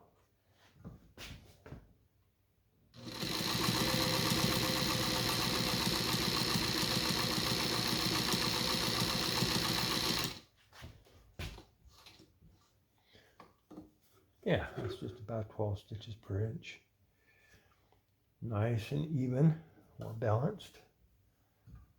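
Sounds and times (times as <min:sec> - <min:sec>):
sewing machine running: 0:03.0 - 0:10.4.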